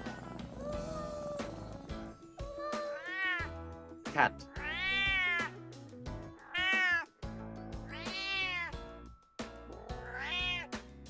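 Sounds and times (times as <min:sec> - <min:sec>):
background music: 0:00.0 - 0:11.0
cat meowing: 0:02.6 - 0:03.5, 0:04.5 - 0:05.5, 0:06.4 - 0:07.1, 0:07.9 - 0:08.8, 0:09.8 - 0:10.7.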